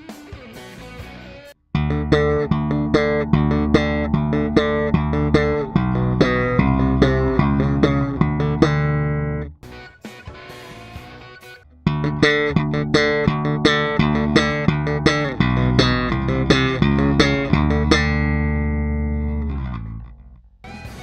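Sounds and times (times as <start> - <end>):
slap bass notes: 1.7 - 9.8, 11.6 - 21.0
quiet bass passage: 1.8 - 9.6, 11.8 - 20.4.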